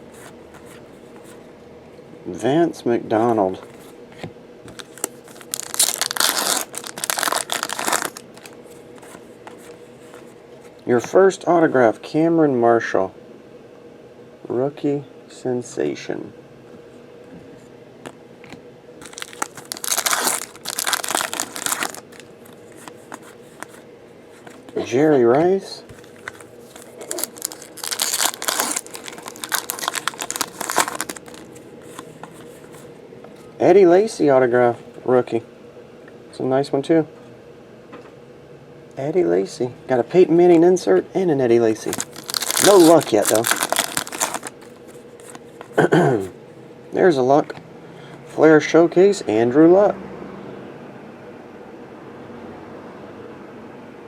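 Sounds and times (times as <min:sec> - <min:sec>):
wrapper tearing and crinkling: 0:04.7 - 0:08.6, 0:19.0 - 0:22.9, 0:26.2 - 0:31.5, 0:41.8 - 0:45.4.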